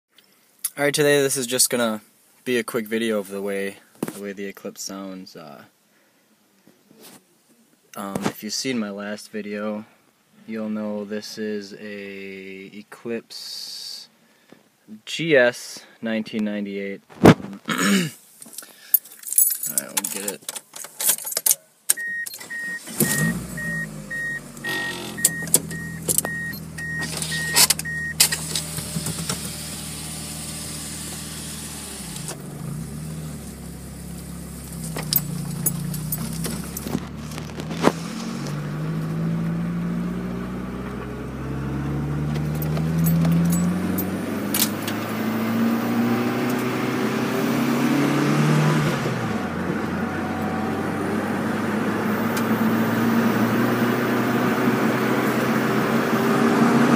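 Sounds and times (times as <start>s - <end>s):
beeping chime: 22.0s - 28.2s
car engine starting and revving: 22.0s - 56.9s.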